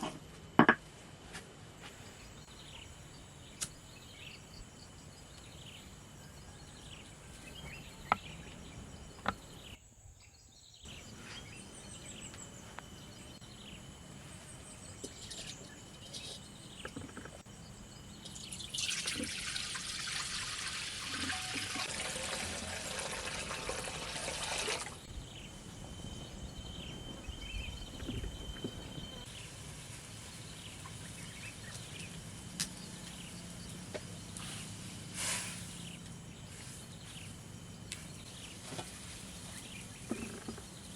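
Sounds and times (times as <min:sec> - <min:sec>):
water pouring: 0:18.3 - 0:25.0.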